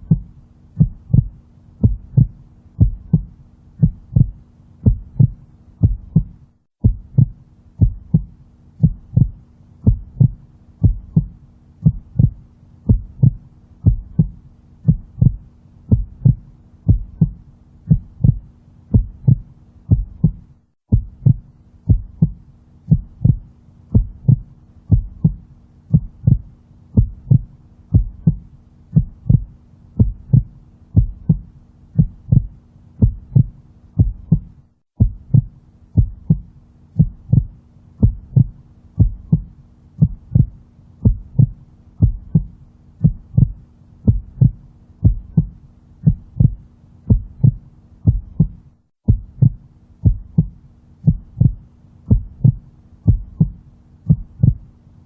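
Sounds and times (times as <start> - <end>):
heartbeat lub-dub: 0.0 - 54.8
faint steady hum: 0.0 - 55.0.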